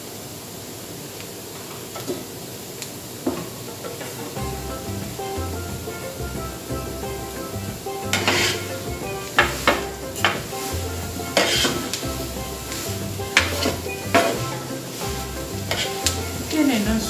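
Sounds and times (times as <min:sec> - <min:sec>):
utensil scraping flowers in pan: 0:07.2 - 0:17.0.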